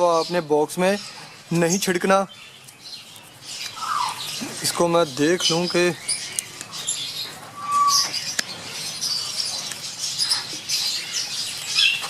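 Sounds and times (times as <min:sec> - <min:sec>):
small birds chirping: 0:00.0 - 0:12.0
clear bird whistle: 0:06.0 - 0:08.5.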